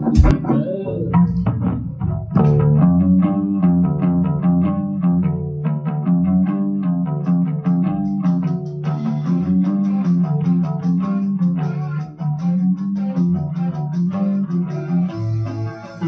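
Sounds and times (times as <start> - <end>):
bass guitar line: 0.0 - 16.0
electric guitar picking notes: 0.0 - 16.0.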